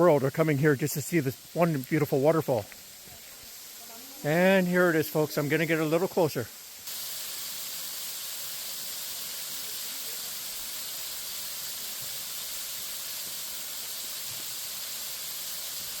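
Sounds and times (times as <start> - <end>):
waterfall rushing: 8.3 - 16.0.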